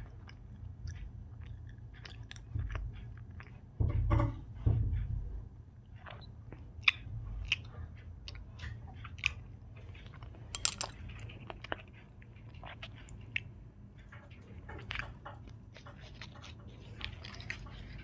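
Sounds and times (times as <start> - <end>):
close chewing: 0.0 - 3.7, 6.0 - 18.0.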